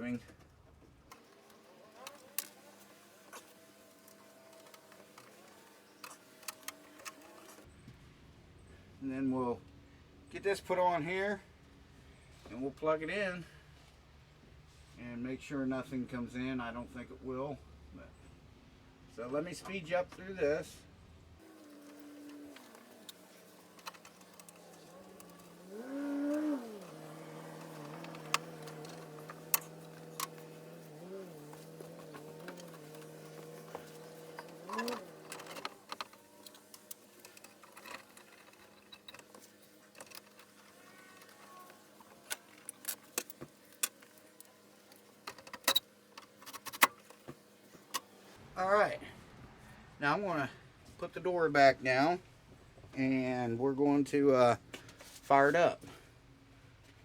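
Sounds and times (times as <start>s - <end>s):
small motor humming: 1.2s - 7.7s, 21.4s - 48.4s
sharp clicks and knocks: 21.6s - 41.4s.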